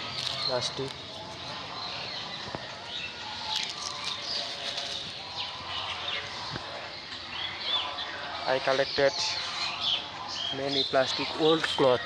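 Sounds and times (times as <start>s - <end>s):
birds chirping: 0.0s - 12.0s
outdoor background noise: 0.0s - 12.0s.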